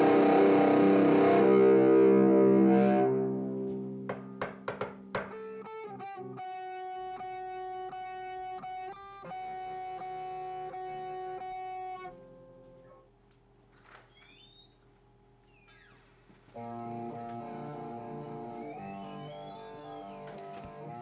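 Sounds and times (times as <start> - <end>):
distorted guitar chord: 0.0 - 4.0
plucked guitar notes: 0.0 - 4.4, 5.0 - 12.2, 16.6 - 18.9
held guitar notes: 0.0 - 12.8, 16.6 - 21.0.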